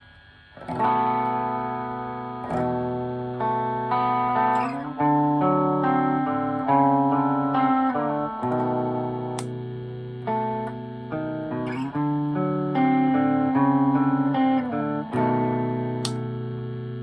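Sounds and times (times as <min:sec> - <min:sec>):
electric guitar strumming chords: 0:00.6 - 0:17.0.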